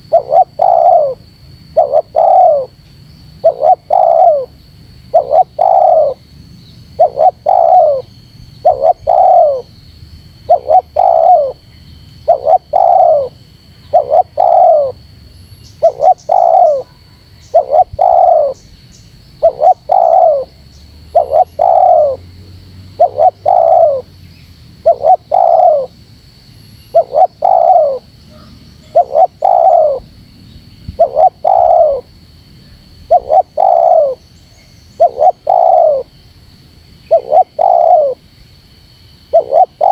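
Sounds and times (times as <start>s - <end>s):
dove cooing: 0.0s - 2.8s, 3.4s - 6.2s, 6.9s - 9.7s, 10.4s - 11.6s, 12.2s - 15.0s, 15.8s - 18.6s, 19.4s - 22.3s, 22.9s - 24.1s, 24.8s - 26.0s, 26.9s - 30.2s, 30.9s - 32.1s, 32.7s - 34.2s, 34.9s - 36.2s, 37.1s - 38.2s, 39.2s - 39.9s.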